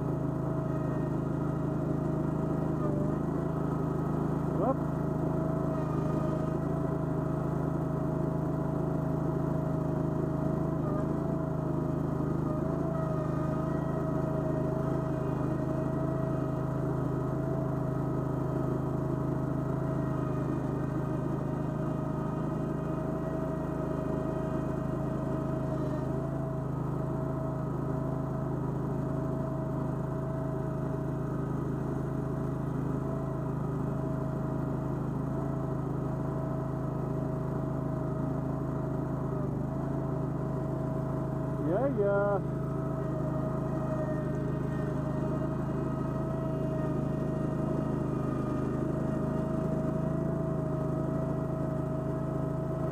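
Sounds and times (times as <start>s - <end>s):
gasoline engine running: 0.0s - 52.9s
high steady whine: 38.6s - 52.9s.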